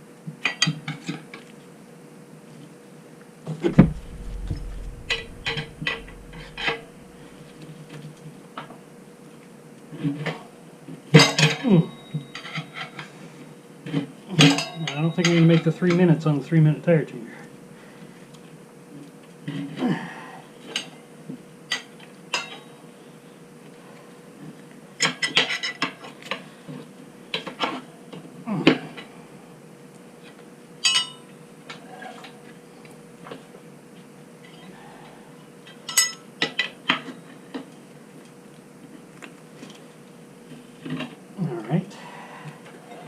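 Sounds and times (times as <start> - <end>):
faint steady hum: 3.7 - 7.6.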